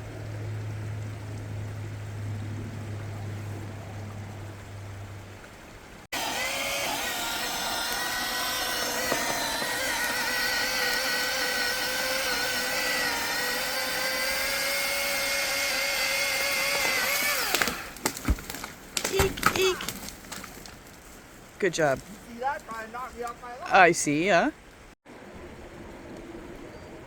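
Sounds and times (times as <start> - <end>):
power drill drilling into wood: 6.2 - 18.0.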